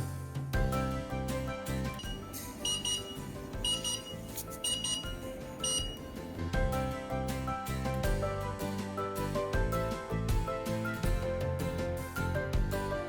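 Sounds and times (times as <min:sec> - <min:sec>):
background music: 0:00.0 - 0:13.0
alarm clock beeping: 0:01.9 - 0:06.4.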